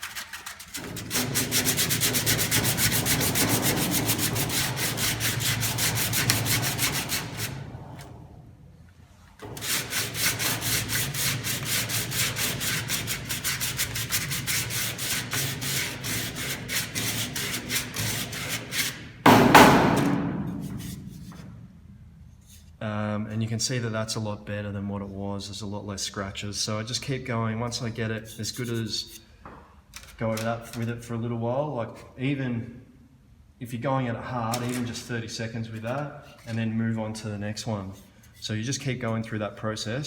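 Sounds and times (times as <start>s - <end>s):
sandpaper rubbing on wood: 0.0s - 7.7s, 9.6s - 20.0s.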